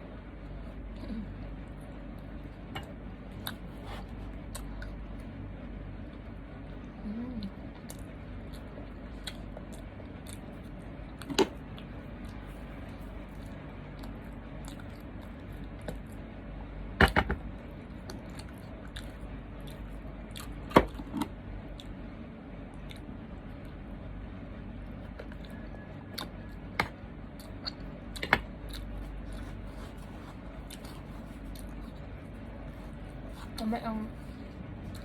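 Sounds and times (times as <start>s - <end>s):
steady low hum: 0.0s - 35.0s
person chewing food: 0.4s - 5.2s, 7.3s - 16.2s, 17.8s - 21.1s, 25.0s - 35.0s.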